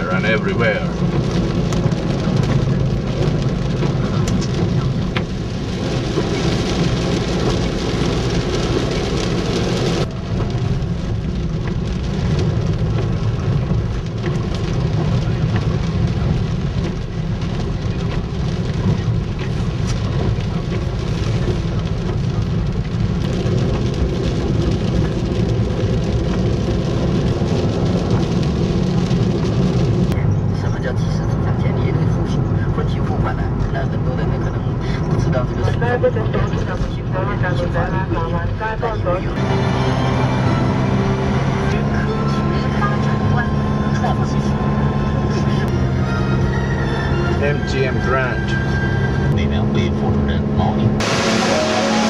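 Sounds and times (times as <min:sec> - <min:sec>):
constant low rumble: 0:00.0 - 0:39.4
steady rain: 0:00.0 - 0:52.0.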